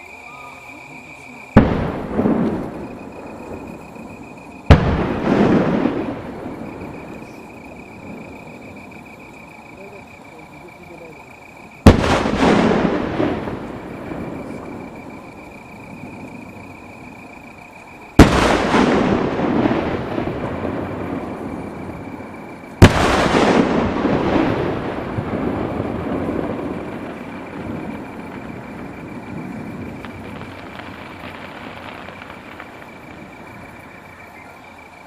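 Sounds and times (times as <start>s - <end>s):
firework boom and rumble: 1.5s - 10.2s, 10.8s - 35.0s.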